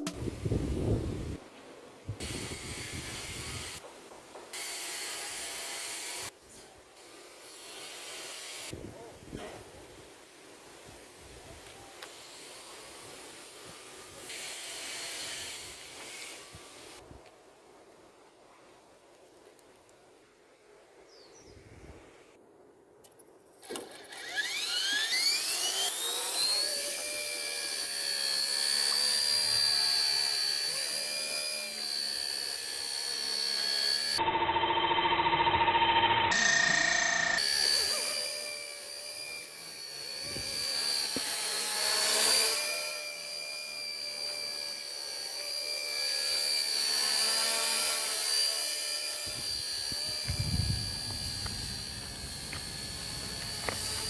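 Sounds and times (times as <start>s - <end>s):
small electric motor whine: 2.2s - 3.8s, 23.1s - 54.0s.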